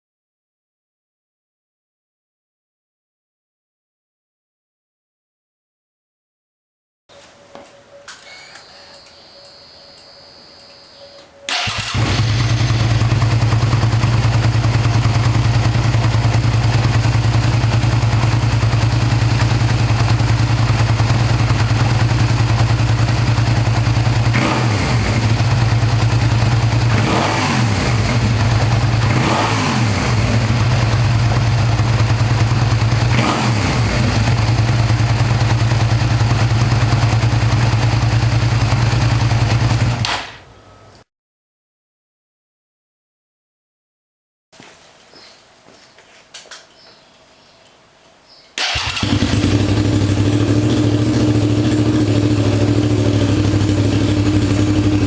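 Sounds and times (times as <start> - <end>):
motorcycle engine idling: 11.5 - 40.0, 48.6 - 55.0
engine throttle blips: 11.5 - 41.0, 48.6 - 55.0.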